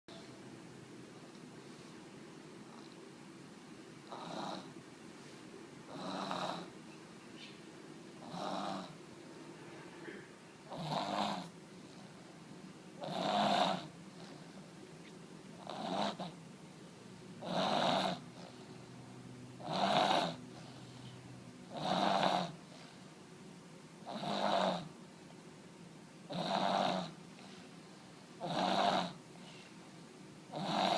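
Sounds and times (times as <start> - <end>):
person snoring: 4.1 - 4.7, 5.9 - 6.7, 8.2 - 9.0, 10.0 - 11.5, 13.0 - 13.9, 15.6 - 16.3, 17.4 - 18.5, 19.6 - 20.4, 21.7 - 22.6, 24.0 - 24.9, 26.3 - 27.2, 28.4 - 29.2, 30.5 - 30.9.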